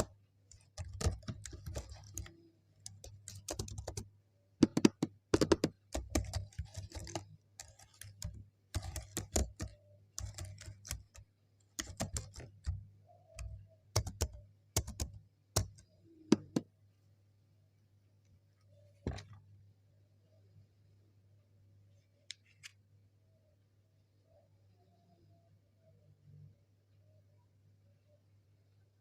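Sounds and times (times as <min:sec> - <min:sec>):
keyboard typing clicks: 0:00.0 - 0:16.7.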